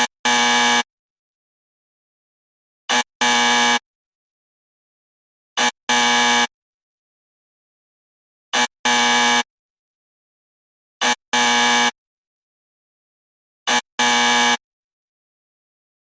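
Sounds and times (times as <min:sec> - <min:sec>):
wrong-answer buzzer: 0:00.0 - 0:00.9, 0:02.9 - 0:03.9, 0:05.6 - 0:06.6, 0:08.5 - 0:09.5, 0:11.0 - 0:12.0, 0:13.7 - 0:14.7.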